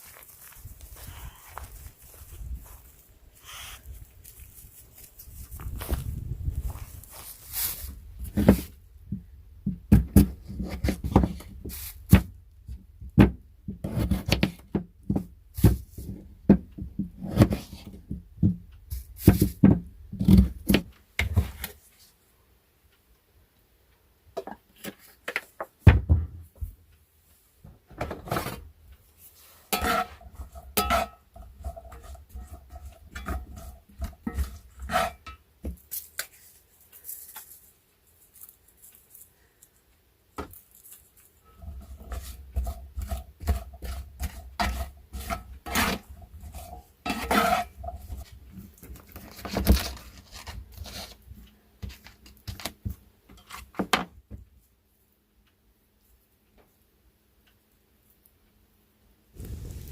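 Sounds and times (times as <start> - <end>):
metal utensils clattering on pots: 29.8 - 35.4.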